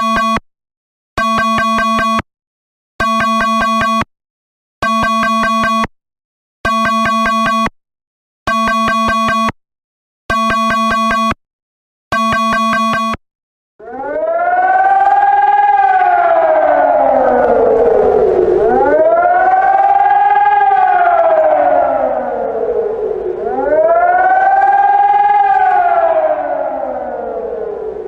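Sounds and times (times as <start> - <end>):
buzzy two-tone alert beep: 6.7 - 7.7, 10.3 - 11.4, 12.1 - 13.2.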